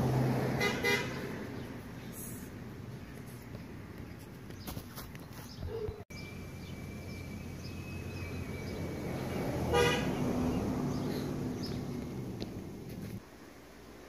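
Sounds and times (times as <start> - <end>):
car road noise: 0.0 - 4.1, 6.2 - 13.3
car horn toot: 0.6 - 1.3, 9.6 - 10.4.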